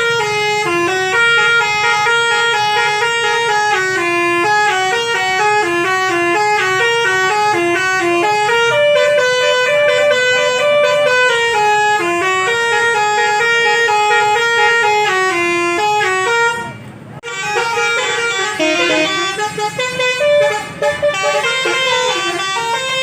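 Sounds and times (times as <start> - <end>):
bus musical horn playing tune: 0.0 - 23.0.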